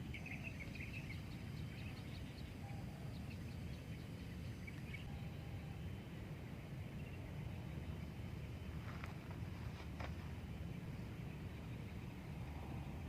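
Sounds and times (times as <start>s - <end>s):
birds chirping: 0.0s - 13.0s
steady low rumble: 0.0s - 13.0s.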